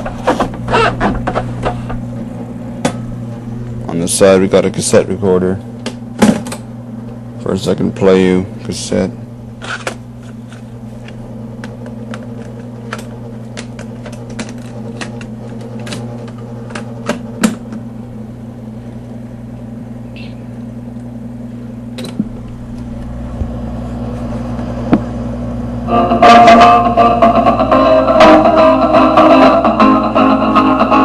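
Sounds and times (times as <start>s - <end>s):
projector motor hum: 0.0s - 31.0s
cassette handling clicks and knocks: 5.8s - 6.7s, 9.6s - 17.8s.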